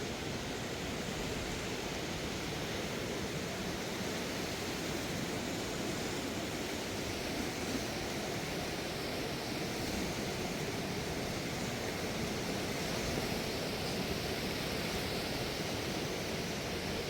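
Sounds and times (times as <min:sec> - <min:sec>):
flooded river rushing: 0:00.0 - 0:17.0.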